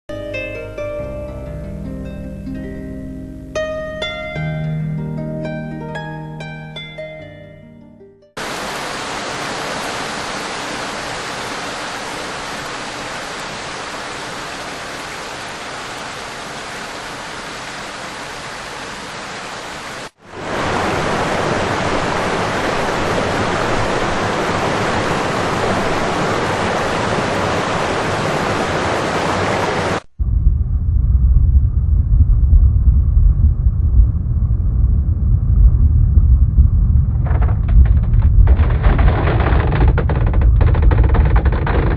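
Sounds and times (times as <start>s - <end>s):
rushing water: 8.4s - 30.1s, 37.2s - 41.9s
loud deep rumble: 30.1s - 41.9s.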